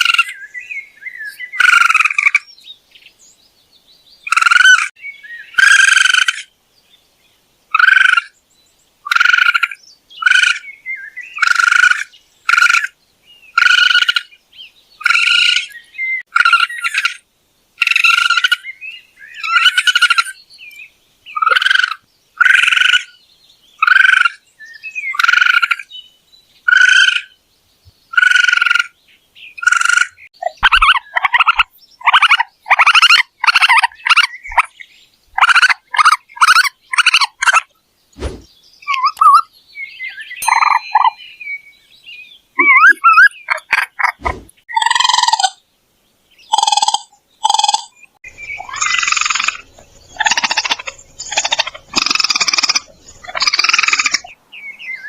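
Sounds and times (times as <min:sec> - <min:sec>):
raccoon calling: 0:05.5 - 0:06.5, 0:07.7 - 0:08.3, 0:13.6 - 0:14.3, 0:15.0 - 0:17.2, 0:17.8 - 0:18.6, 0:19.3 - 0:20.4, 0:21.3 - 0:23.1, 0:26.7 - 0:27.4, 0:29.6 - 0:34.7, 0:35.4 - 0:37.7, 0:42.6 - 0:45.6, 0:46.5 - 0:54.3.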